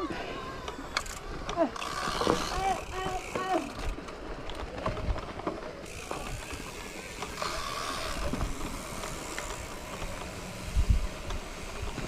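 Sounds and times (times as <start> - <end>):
bicycle tyres rumbling: 0.0 - 12.0
wind on microphone: 10.7 - 12.0.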